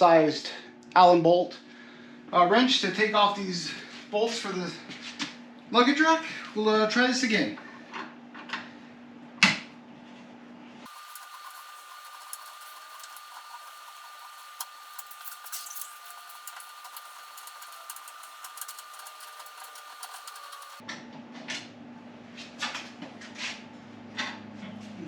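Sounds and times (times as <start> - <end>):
steady high whine: 10.9 - 20.8.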